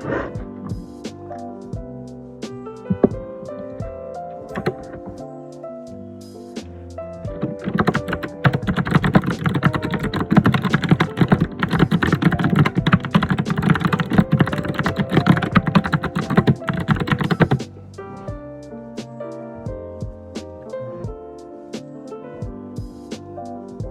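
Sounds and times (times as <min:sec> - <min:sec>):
soft background music: 0:00.0 - 0:23.9
fast typing on keyboard: 0:04.5 - 0:05.2, 0:07.4 - 0:17.6.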